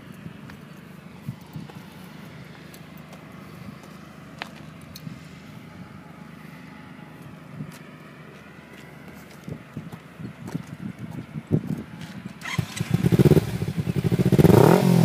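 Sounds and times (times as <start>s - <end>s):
motorcycle engine idling: 0.0s - 15.0s.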